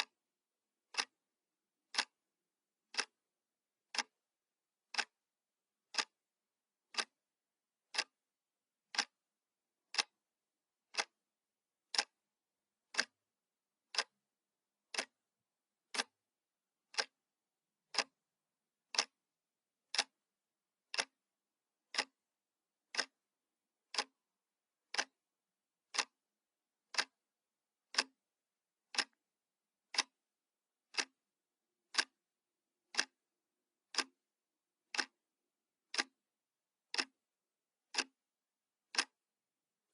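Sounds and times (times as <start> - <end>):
clock ticking: 0.0 - 0.2, 0.8 - 1.2, 1.8 - 4.2, 4.8 - 5.2, 5.8 - 7.2, 7.8 - 8.2, 8.8 - 10.2, 10.8 - 14.2, 14.8 - 16.2, 16.8 - 26.3, 26.9 - 28.2, 28.9 - 30.3, 30.9 - 31.3, 31.9 - 32.2, 32.9 - 33.2, 33.9 - 36.2, 36.8 - 37.3, 37.9 - 38.2, 38.8 - 39.3.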